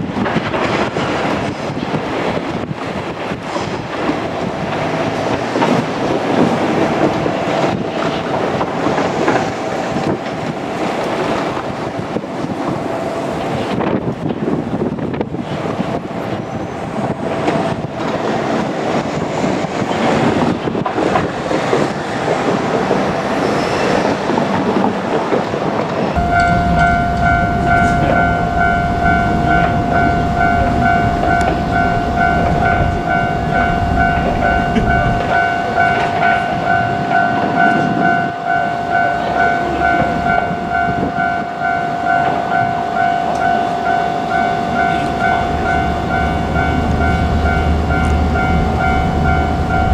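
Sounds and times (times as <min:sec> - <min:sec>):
wind noise on microphone: 0:00.0 - 0:49.9
low rumble: 0:26.2 - 0:37.1, 0:44.2 - 0:49.9
level crossing alarm dinging: 0:26.2 - 0:49.9.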